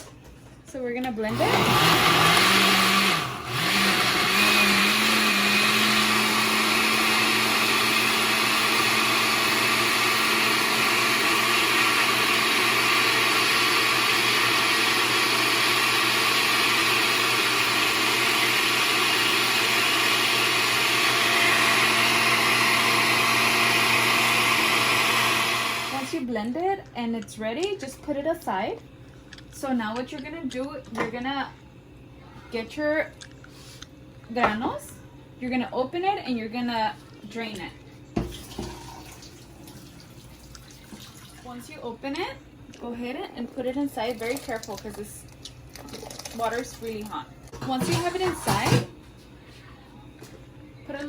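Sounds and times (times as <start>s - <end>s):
blender running: 1.2s - 26.2s.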